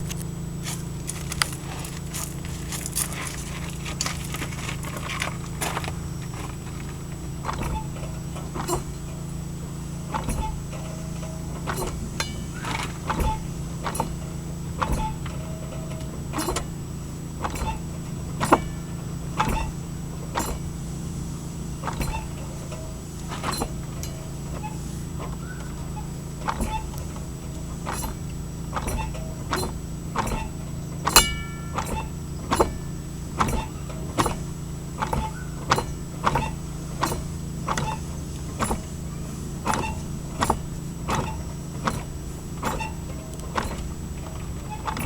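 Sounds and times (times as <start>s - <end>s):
differential crackling and clicking: 0.0s - 7.0s
drivetrain clunks: 0.0s - 45.0s
steady low hum: 0.0s - 45.0s.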